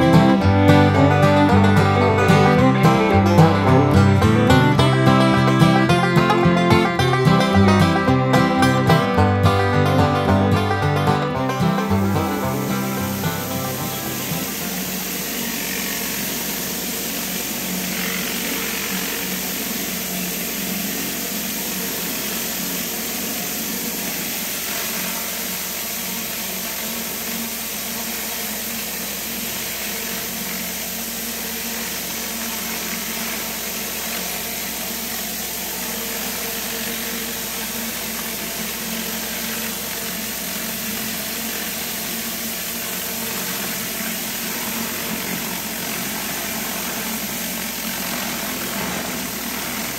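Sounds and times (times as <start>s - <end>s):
pressure washer engine hum: 0.0s - 49.9s
water spraying: 10.6s - 49.9s.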